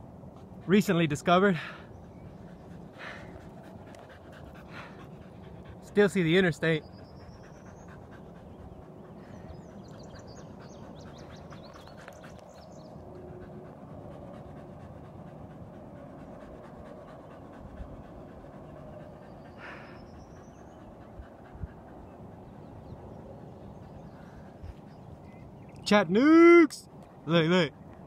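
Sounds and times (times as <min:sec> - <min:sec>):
steady outdoor hum: 0:00.0 - 0:28.0
person breathing hard: 0:02.9 - 0:03.4, 0:04.6 - 0:05.0, 0:19.6 - 0:20.2.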